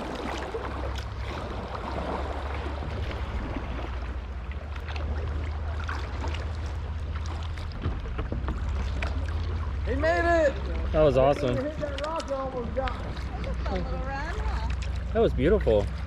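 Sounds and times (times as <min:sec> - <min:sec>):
river water rushing: 0:00.0 - 0:07.8
low rumble: 0:00.0 - 0:16.0
small water splashes: 0:00.0 - 0:16.0.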